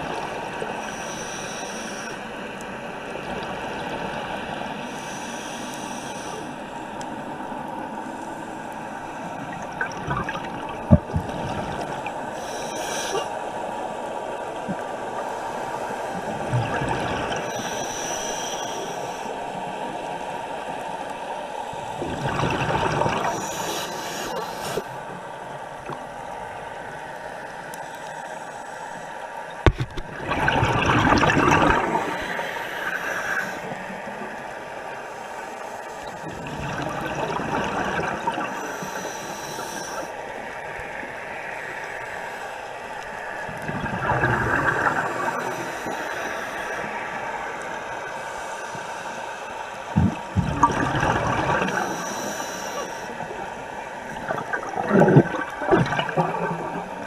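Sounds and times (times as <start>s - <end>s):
regulator hissing inhale: 0.7s - 2.3s, 4.8s - 6.8s, 12.3s - 13.4s, 17.4s - 19.5s, 23.3s - 25.1s, 32.0s - 33.9s, 38.5s - 40.2s, 45.0s - 49.9s, 51.7s - 53.4s
exhaled bubbles rushing: 9.5s - 12.0s, 22.0s - 23.5s, 30.0s - 32.4s, 36.4s - 38.5s, 43.5s - 45.5s, 50.0s - 51.8s, 54.1s - 57.0s.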